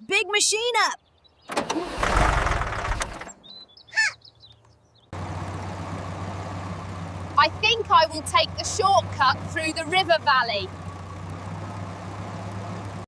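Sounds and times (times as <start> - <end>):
tractor engine starting: 1.4 - 3.4
tractor engine idling: 1.5 - 3.3, 5.2 - 13.0.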